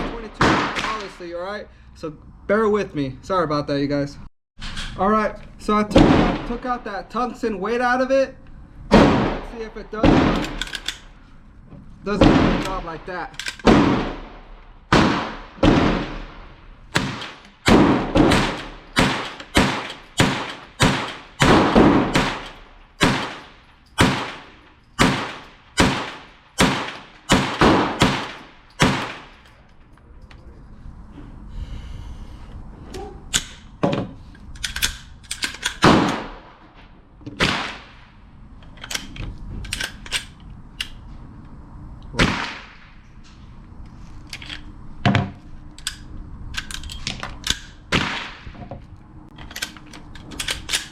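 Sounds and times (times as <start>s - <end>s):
pistol gunshots: 0.0s - 1.1s, 6.0s - 6.6s, 8.9s - 10.8s, 12.2s - 13.0s, 13.6s - 29.4s, 35.8s - 36.6s, 37.4s - 38.1s, 42.2s - 42.8s, 47.9s - 48.6s.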